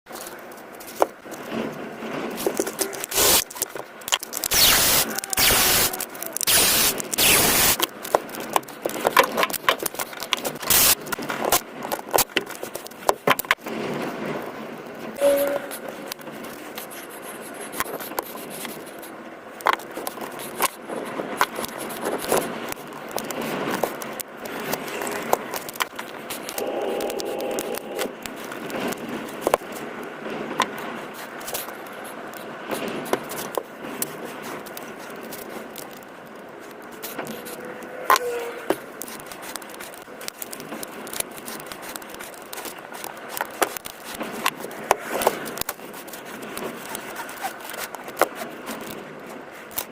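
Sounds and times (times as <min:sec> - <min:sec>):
small tools clicking and tapping: 0:02.4 - 0:13.6.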